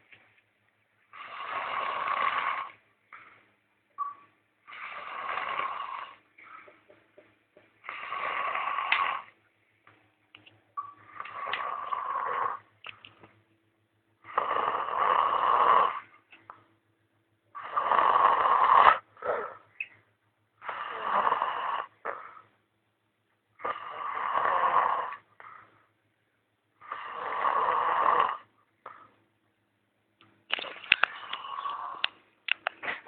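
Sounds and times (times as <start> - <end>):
person snoring: 1.1 - 2.8, 4.6 - 6.6, 7.8 - 9.4, 11.0 - 12.7, 14.2 - 16.1, 17.6 - 19.6, 20.6 - 22.5, 23.6 - 25.7, 26.8 - 29.1, 31.1 - 32.1.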